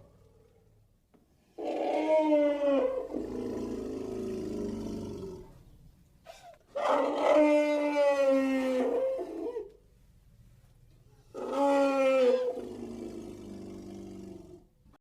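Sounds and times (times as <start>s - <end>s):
elephant trumpeting: 11.4s - 13.1s.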